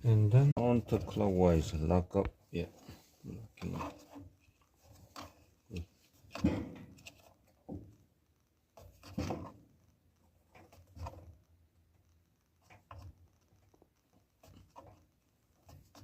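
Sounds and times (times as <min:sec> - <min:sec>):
hands knocking and rubbing parts: 0:00.6 - 0:08.1, 0:08.7 - 0:11.4.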